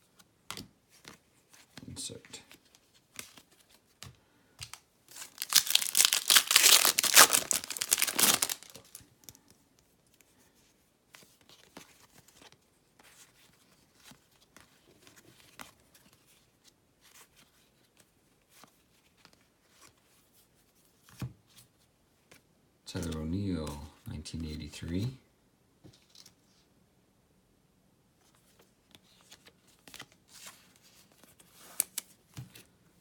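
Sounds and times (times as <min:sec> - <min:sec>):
wrapper being ripped open: 0:05.1 - 0:09.0.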